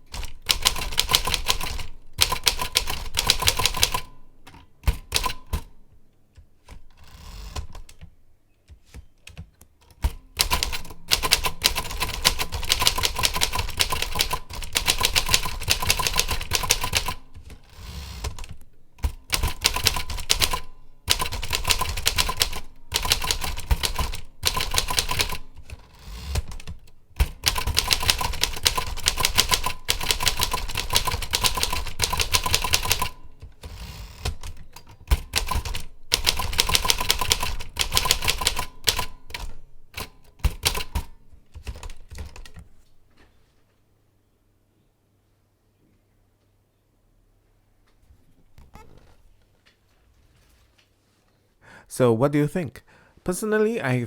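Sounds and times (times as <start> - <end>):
keyboard typing: 0.0 - 4.1, 6.3 - 42.7.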